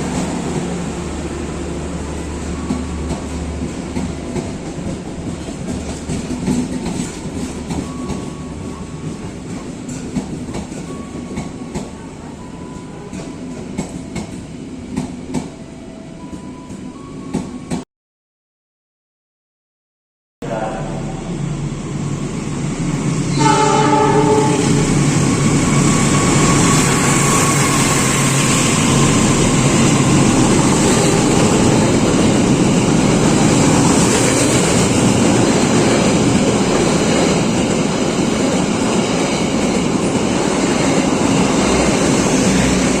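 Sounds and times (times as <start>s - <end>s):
train wheels rumbling: 0.0s - 17.8s, 20.4s - 43.0s
train horn: 23.3s - 25.1s, 25.7s - 32.1s.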